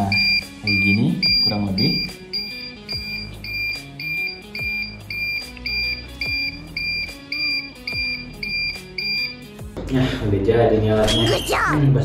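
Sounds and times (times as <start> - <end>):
high-pitched buzzer beeps: 0.0 - 9.5
background music: 0.0 - 12.0.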